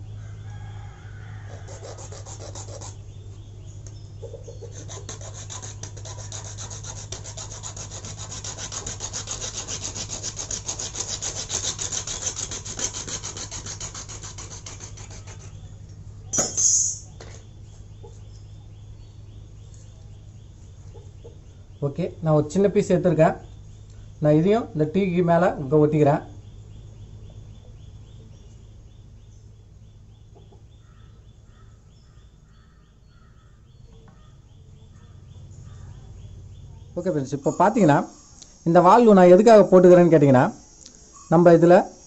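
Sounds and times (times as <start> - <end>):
hacksaw cutting plastic pipe: 4.7 - 15.6.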